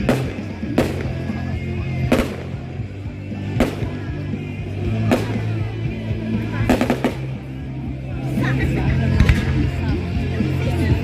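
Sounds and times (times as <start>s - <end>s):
fireworks bursting: 0.0s - 5.7s, 6.6s - 7.4s
music with low notes: 0.0s - 11.0s.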